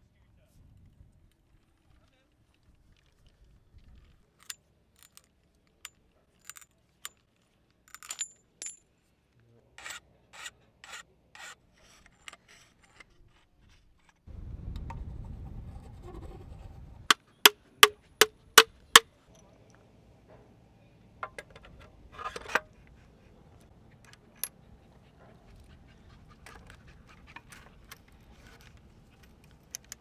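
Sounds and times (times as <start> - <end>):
light clicks of tools: 26.4 - 30.0.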